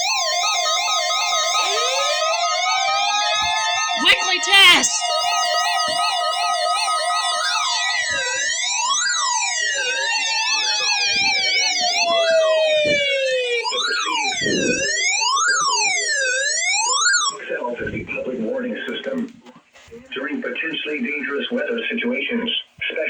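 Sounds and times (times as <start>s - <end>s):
electronic warning siren tones: 0.0s - 18.2s.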